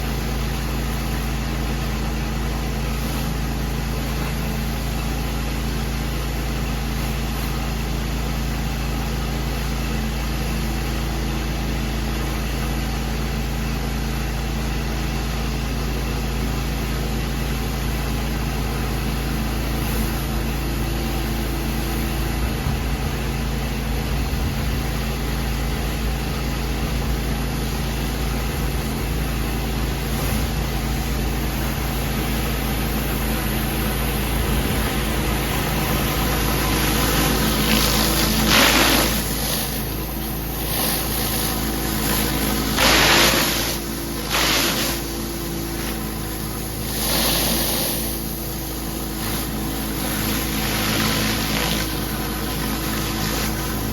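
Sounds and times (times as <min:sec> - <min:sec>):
pressure washer engine hum: 0:00.0 - 0:53.9
pressure washer hiss: 0:29.4 - 0:53.9.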